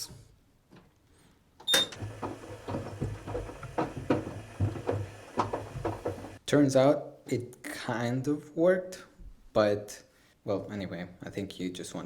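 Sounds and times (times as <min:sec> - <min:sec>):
washing machine click: 0:01.6 - 0:06.4
shoes thudding in drum: 0:02.2 - 0:06.4.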